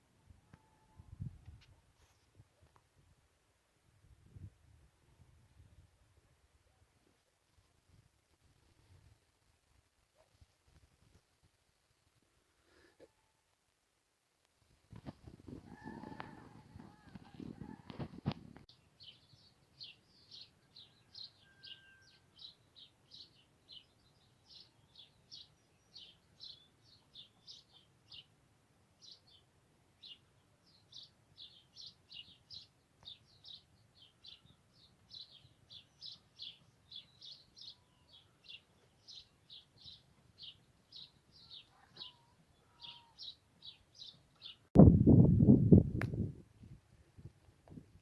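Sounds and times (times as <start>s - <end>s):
songbirds chirping: 15.2s - 44.7s.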